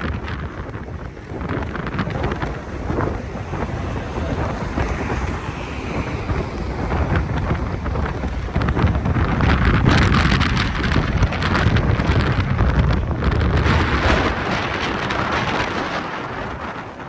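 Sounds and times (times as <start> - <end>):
wind blowing across microphone: 0.0 - 17.0.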